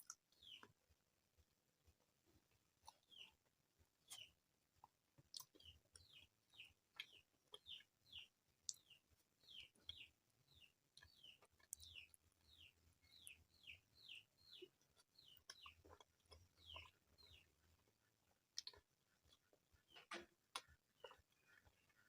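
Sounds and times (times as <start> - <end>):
wet chewing mouth sounds: 4.1 - 7.9, 10.9 - 12.2, 14.6 - 17.2, 18.5 - 19.7, 20.5 - 22.0.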